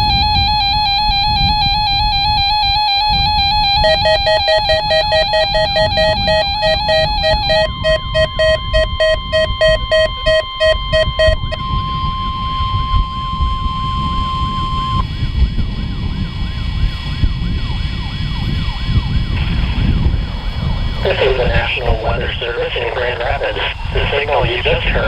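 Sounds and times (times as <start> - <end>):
pulsed beeping tones: 0.0 - 15.0
siren sweeping up and down: 0.0 - 15.0
steady warning alarm tone: 0.0 - 15.0
low rumble: 3.1 - 25.0.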